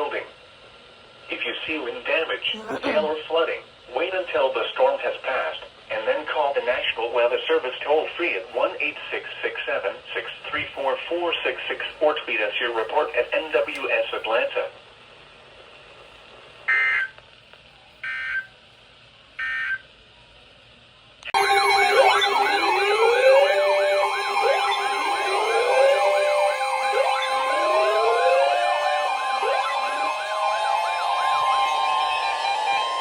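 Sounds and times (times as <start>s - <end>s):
electronic sirens wailing: 21.3s - 33.0s.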